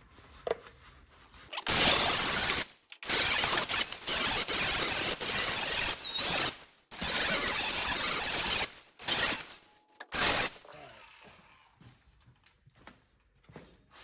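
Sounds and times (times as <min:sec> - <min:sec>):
grinder grinding metal: 0:01.5 - 0:11.5.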